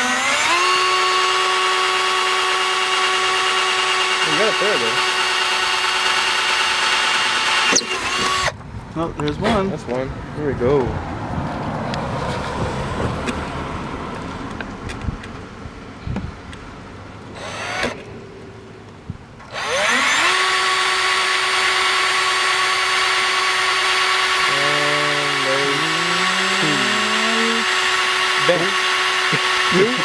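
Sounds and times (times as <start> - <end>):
power drill boring: 0.0 - 8.6, 17.3 - 18.1, 19.4 - 30.0.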